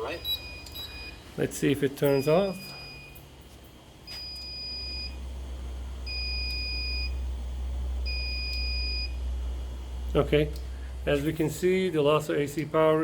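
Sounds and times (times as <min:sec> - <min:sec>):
high electronic alarm beeps: 0:00.0 - 0:01.3, 0:02.0 - 0:03.3, 0:04.1 - 0:05.2, 0:06.1 - 0:07.2, 0:08.0 - 0:09.2
low steady rumble: 0:00.0 - 0:13.0.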